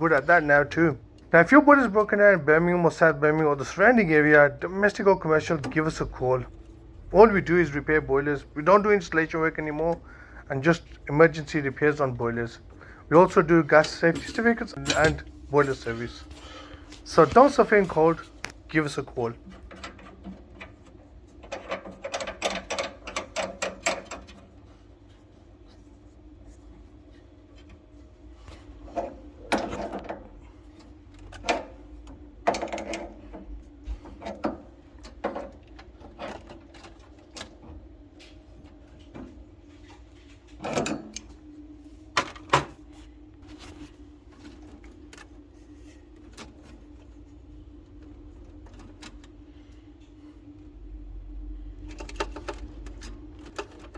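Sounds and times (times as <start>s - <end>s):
faint steady hum: 0.0s - 53.9s
metal knocks and clicks: 19.4s - 24.5s.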